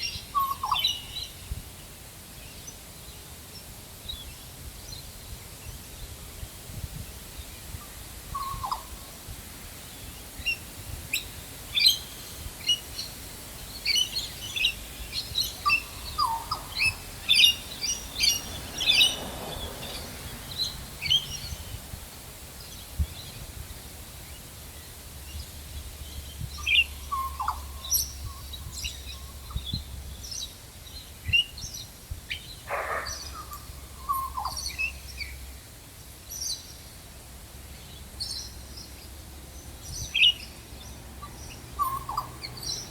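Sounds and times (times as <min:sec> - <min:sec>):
birds chirping: 0:09.6 - 0:21.8, 0:24.2 - 0:35.7, 0:37.7 - 0:42.9
bird calls dropping in pitch: 0:32.7 - 0:34.5.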